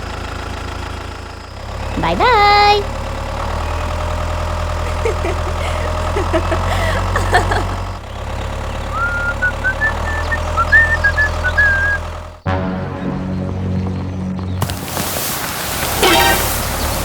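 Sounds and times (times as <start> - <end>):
tractor engine idling: 0.0 - 12.5, 13.4 - 17.0
high chirping whistles: 8.9 - 12.1.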